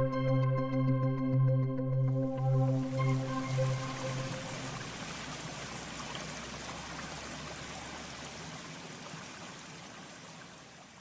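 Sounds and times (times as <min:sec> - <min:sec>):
mountain stream flowing: 0:02.5 - 0:11.0.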